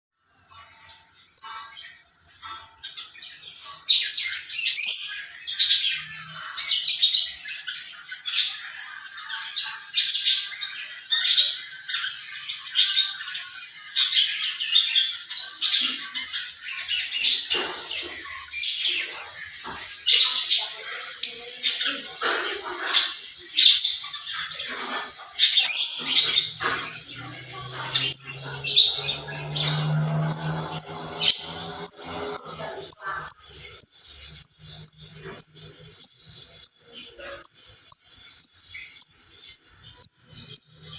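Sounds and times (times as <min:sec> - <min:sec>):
songbird chirping: 0:00.2 - 0:40.9.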